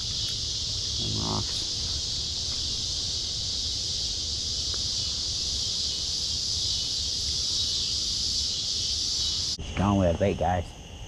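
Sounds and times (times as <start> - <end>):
insects buzzing: 0.0 - 11.0.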